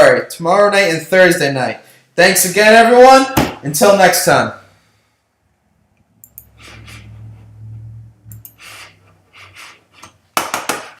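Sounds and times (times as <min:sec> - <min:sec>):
low hum: 0:05.5 - 0:09.1
clicks: 0:06.0 - 0:06.5, 0:08.3 - 0:08.6.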